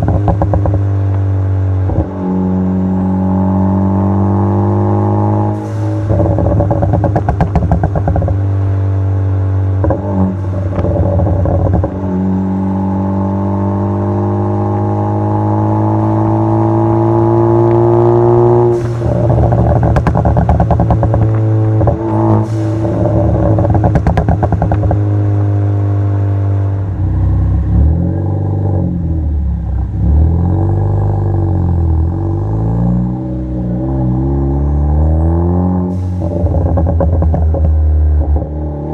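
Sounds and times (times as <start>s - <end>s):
exhaust crackles and pops: 0.0s - 2.1s, 6.0s - 8.8s, 9.8s - 12.5s, 16.8s - 25.8s, 36.2s - 38.9s
car engine accelerating: 0.0s - 38.9s.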